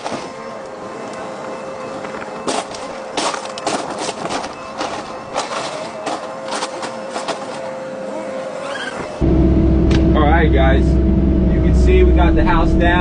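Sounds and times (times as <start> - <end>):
mechanical hum: 0.0 - 13.0
debris cracking and crashing: 2.0 - 7.7.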